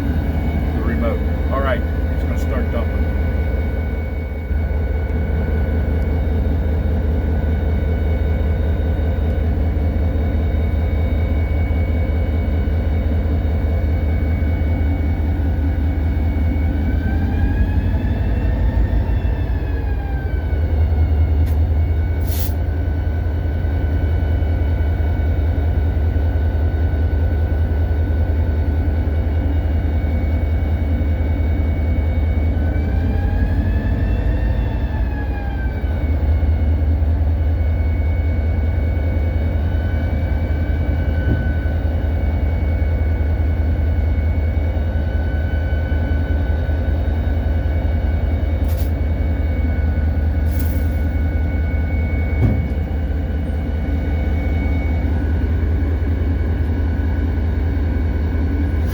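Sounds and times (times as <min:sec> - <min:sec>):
diesel locomotive rumble from cab: 0:00.0 - 0:58.9.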